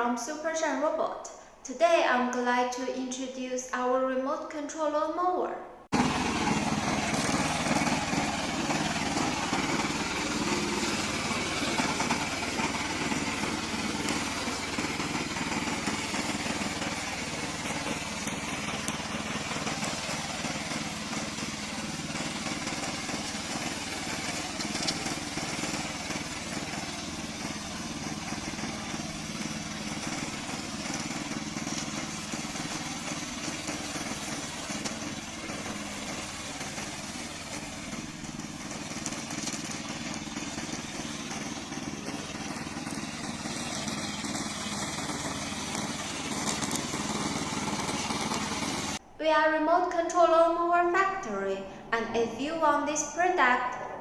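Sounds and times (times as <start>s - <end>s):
lawn mower engine running: 5.9s - 49.0s.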